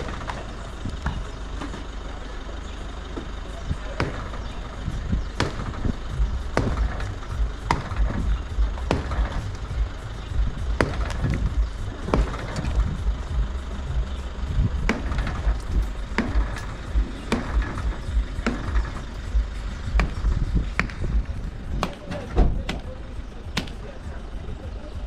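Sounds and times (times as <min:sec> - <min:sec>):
low rumble: 0:00.0 - 0:25.0
sharp construction knocks: 0:05.4 - 0:09.7, 0:10.6 - 0:13.0, 0:14.8 - 0:21.2.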